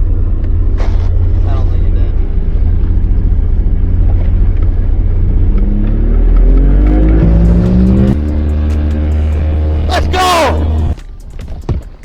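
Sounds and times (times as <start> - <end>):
outboard motor running: 0.0 - 11.2.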